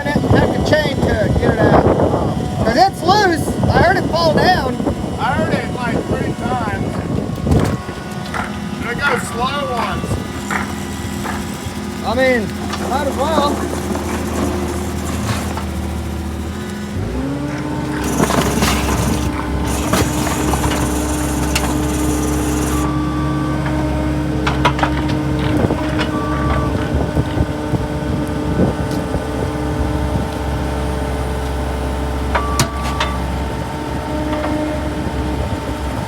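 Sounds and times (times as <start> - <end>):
auger engine running: 0.0 - 36.0
auger clanking against rock: 17.9 - 22.8.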